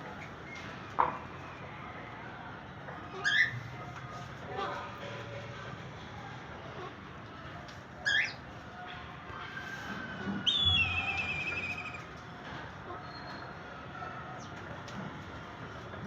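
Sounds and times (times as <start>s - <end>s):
parrots calling: 8.0s - 8.4s, 10.5s - 12.0s.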